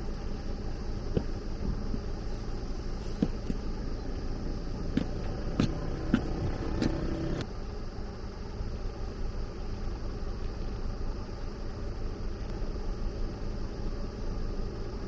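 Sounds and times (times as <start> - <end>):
vehicle engine rumbling: 0.0 - 7.5.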